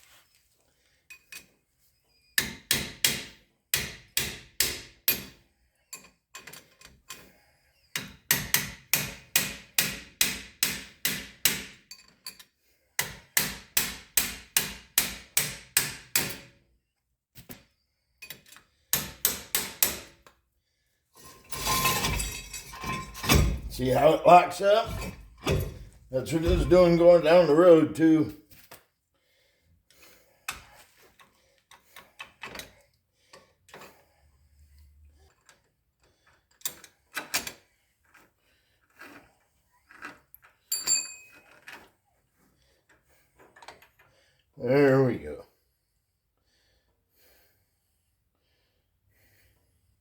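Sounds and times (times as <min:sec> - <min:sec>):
hammer striking metal axle: 0:02.4 - 0:05.4, 0:08.0 - 0:11.8, 0:13.0 - 0:16.5, 0:19.0 - 0:20.2, 0:21.6 - 0:24.0, 0:24.8 - 0:26.8.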